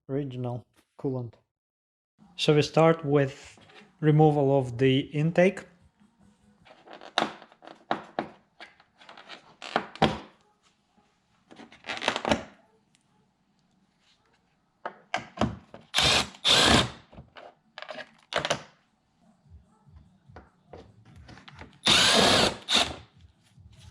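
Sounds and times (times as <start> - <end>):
cordless driver spinning out screws: 15.9 - 17.0, 21.8 - 23.0.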